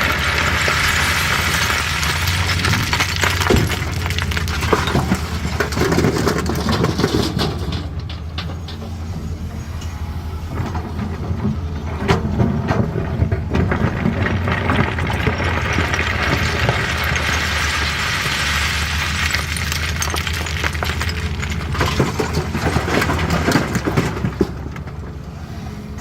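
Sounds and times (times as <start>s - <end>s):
stones knocking on steel bucket: 0.0s - 7.8s, 13.3s - 24.7s
excavator diesel engine: 0.0s - 26.0s.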